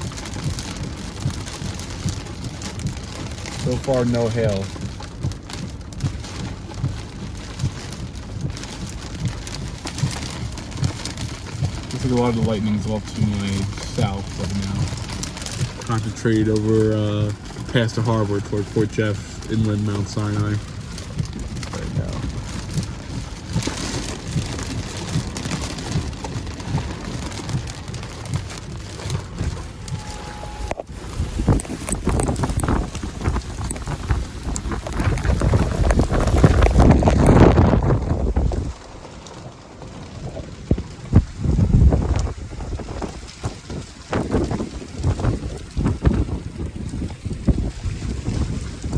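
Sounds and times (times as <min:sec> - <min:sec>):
heavy rain hissing: 0:00.0 - 0:36.9
wind buffeting microphone: 0:00.0 - 0:48.9.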